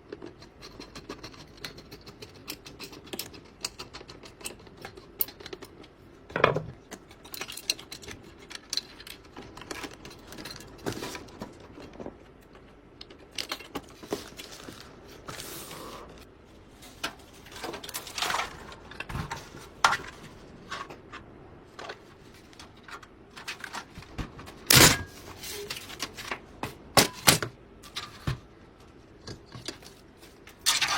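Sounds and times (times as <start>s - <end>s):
computer parts clicking and knocking: 0.0s - 14.0s.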